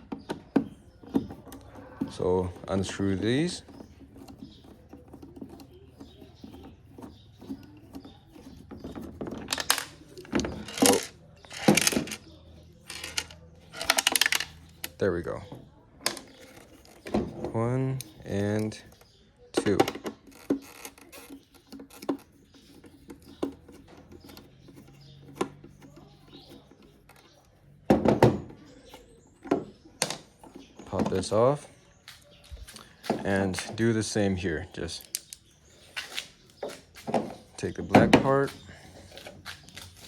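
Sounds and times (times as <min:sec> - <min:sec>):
plastic clicks and knocks: 0:00.0 - 0:31.4.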